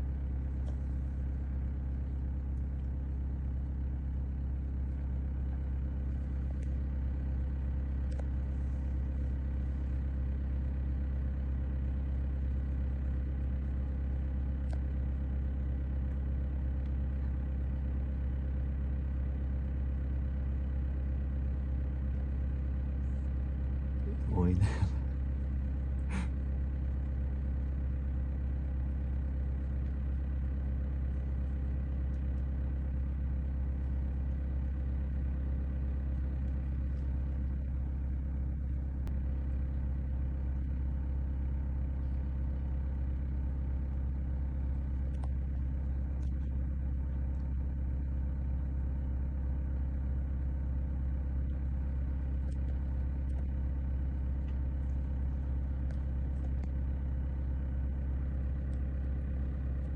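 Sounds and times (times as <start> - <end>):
car engine idling: 0.0 - 59.9.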